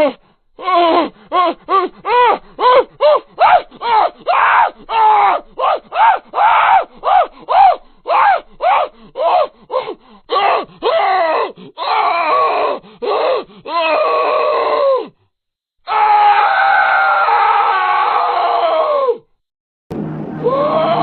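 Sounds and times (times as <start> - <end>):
monster calls rising and falling: 20.2 - 21.0.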